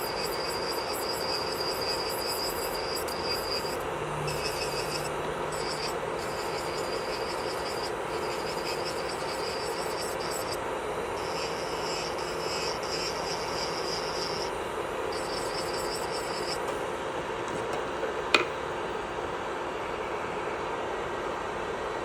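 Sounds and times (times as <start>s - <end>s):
high hiss from drill bit: 0.0s - 10.6s, 11.2s - 16.7s
electric nail drill running: 0.0s - 16.8s.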